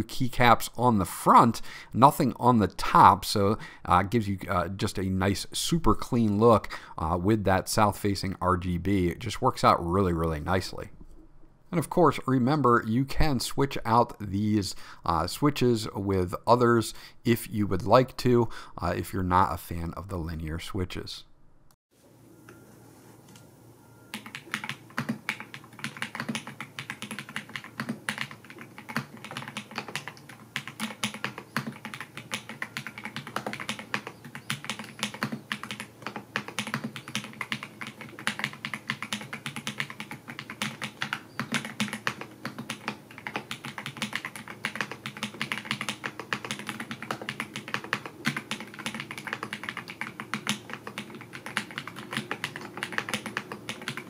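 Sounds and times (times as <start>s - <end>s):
mechanical keyboard typing: 24.1s - 54.0s.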